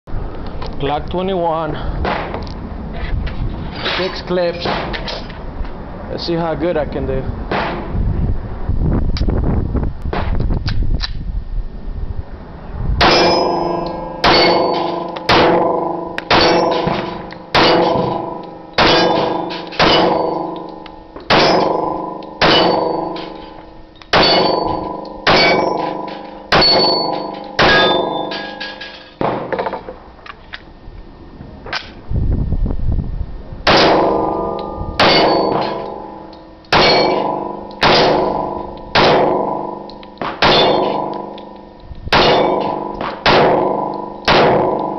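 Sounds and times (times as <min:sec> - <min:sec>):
pistol shots: 0:13.0 - 0:23.4, 0:24.1 - 0:28.6, 0:33.7 - 0:36.0, 0:36.7 - 0:41.3, 0:42.1 - 0:44.9
steel target plate clanging: 0:13.0 - 0:29.9, 0:33.7 - 0:41.6, 0:42.2 - 0:44.9.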